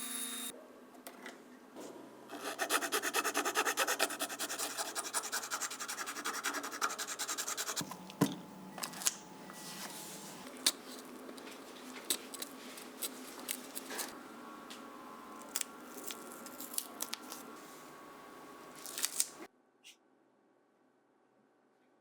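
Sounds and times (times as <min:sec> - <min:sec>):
rubbing on a hard surface: 0:02.3 - 0:07.8.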